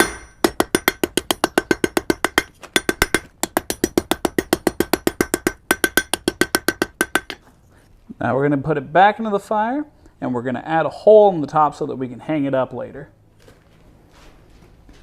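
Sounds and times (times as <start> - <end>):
hammer ringing on anvil: 0.0 - 4.0.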